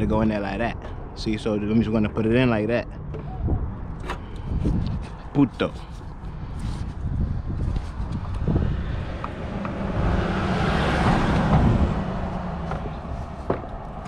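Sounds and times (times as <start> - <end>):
vehicle passing by: 6.4 - 14.0.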